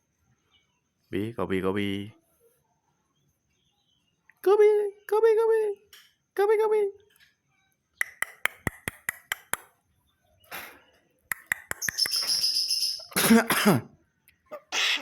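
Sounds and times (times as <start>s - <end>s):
sharp clicks: 8.0s - 9.7s, 11.3s - 12.5s
loud cough: 13.1s - 13.9s.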